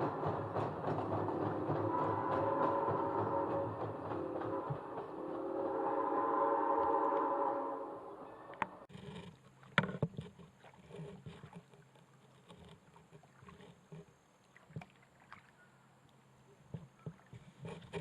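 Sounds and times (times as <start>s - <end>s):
sharp knocks: 0.0s - 5.2s
paddle splashing water: 8.9s - 18.0s.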